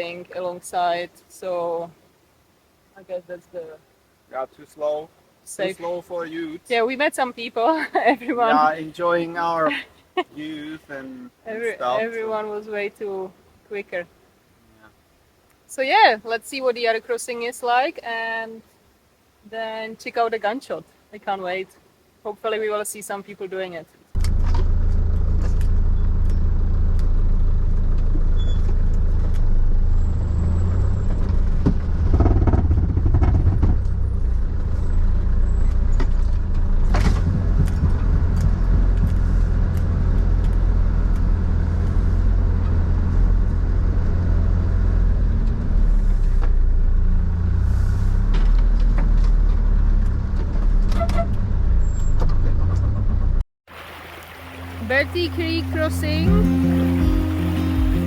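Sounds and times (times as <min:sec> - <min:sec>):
truck engine rumbling: 0:24.2 - 0:58.0
truck body knocking and rattling: 0:31.1 - 0:34.0, 0:36.0 - 0:39.8.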